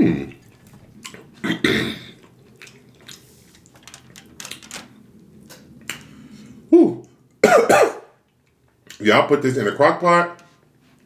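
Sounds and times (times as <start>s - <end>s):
person chewing with wet mouth clicks: 2.2s - 3.7s.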